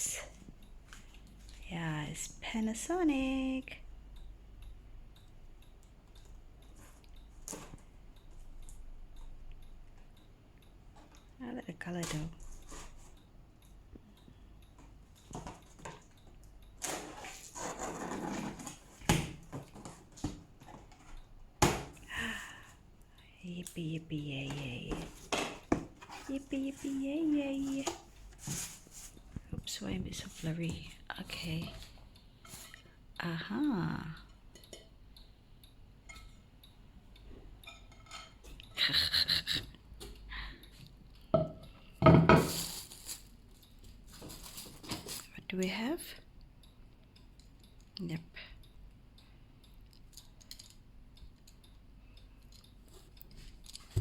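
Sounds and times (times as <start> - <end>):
scraping and rustling: 16.8 - 19.0.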